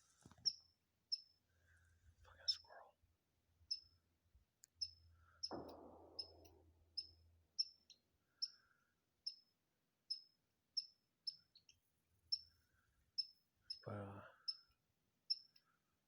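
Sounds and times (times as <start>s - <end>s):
squirrel alarm chirps: 0.5s - 1.4s, 3.6s - 4.0s, 4.8s - 5.6s, 6.2s - 9.5s, 10.1s - 14.7s, 15.3s - 15.6s.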